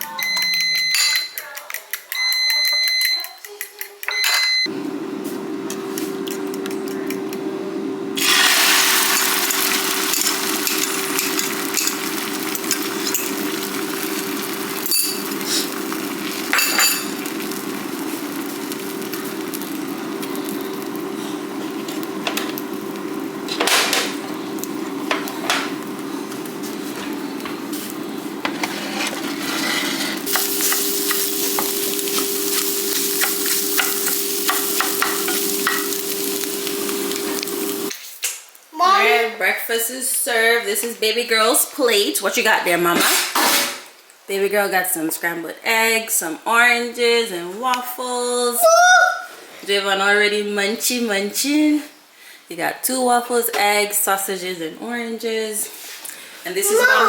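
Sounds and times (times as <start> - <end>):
electronic appliance beeps: 0.0 - 1.4, 2.1 - 3.4, 4.1 - 4.8, 9.1 - 25.4, 30.2 - 37.9
fan hum: 4.7 - 37.9
food sizzling in a frying pan: 8.2 - 38.2
utensil scraping a pan: 28.4 - 30.8.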